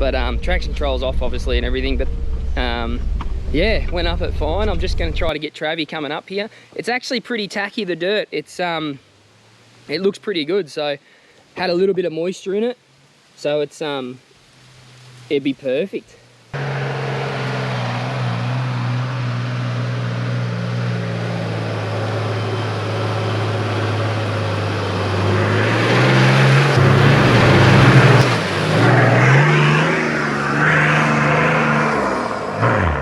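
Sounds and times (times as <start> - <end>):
off-road vehicle engine revving: 0.0 - 5.3, 16.6 - 33.0.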